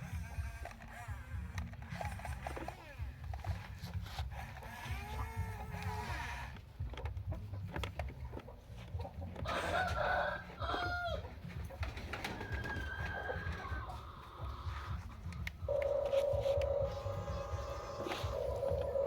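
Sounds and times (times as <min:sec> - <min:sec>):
poultry calling: 0:04.3 - 0:06.8, 0:08.5 - 0:19.0.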